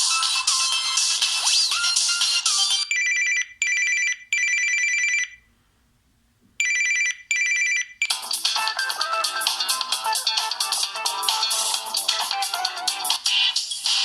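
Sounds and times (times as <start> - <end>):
musical ringtone: 0.0 - 4.1, 6.7 - 14.0
trilling phone ringtone: 1.8 - 5.4, 6.6 - 8.2.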